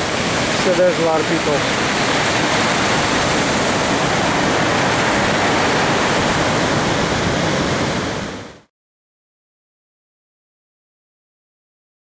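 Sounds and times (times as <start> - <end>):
ocean surf breaking: 0.0 - 8.7.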